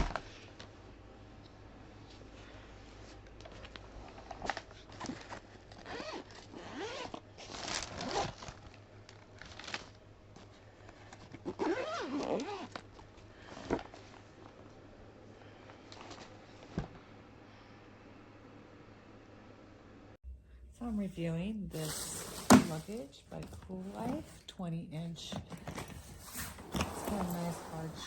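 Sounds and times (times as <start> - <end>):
zipper rasping and clicking: 5.0 - 8.6, 11.1 - 14.2, 25.4 - 28.0.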